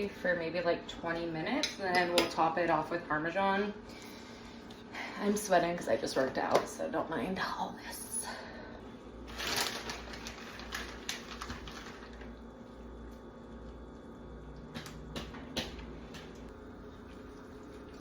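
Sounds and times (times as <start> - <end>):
rustling: 9.3 - 12.3.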